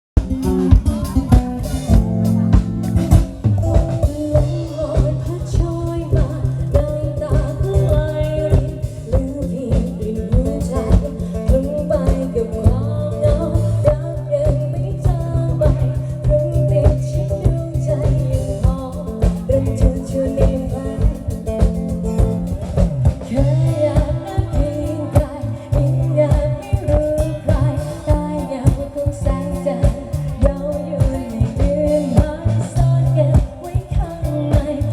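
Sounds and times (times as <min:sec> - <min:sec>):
band music with singing: 0:00.2 - 0:34.9.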